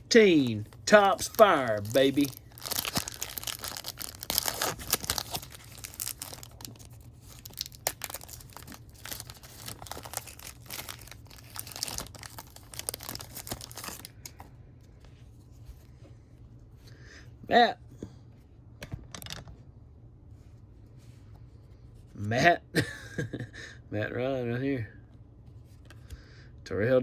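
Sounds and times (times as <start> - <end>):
card pack wrapper crinkling: 0.0 - 14.2.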